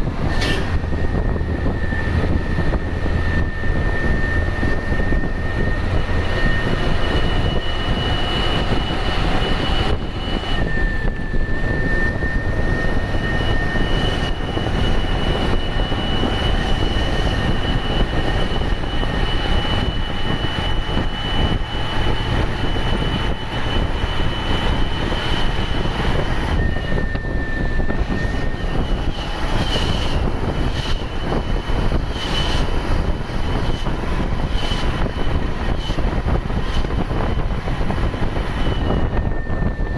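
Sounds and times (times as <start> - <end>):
diesel engine running: 0.0 - 39.9
turbocharger whistle: 0.0 - 39.9.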